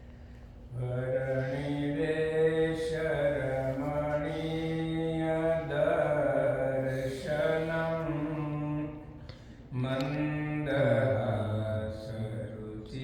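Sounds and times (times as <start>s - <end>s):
man chanting: 0.7s - 13.0s.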